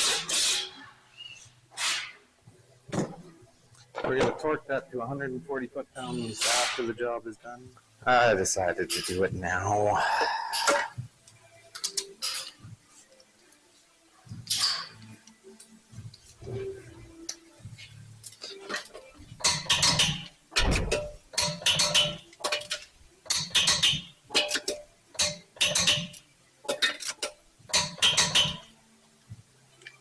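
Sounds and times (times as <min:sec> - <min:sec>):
ratchet wrench clicking: 0:21.4 - 0:26.2, 0:26.8 - 0:28.6.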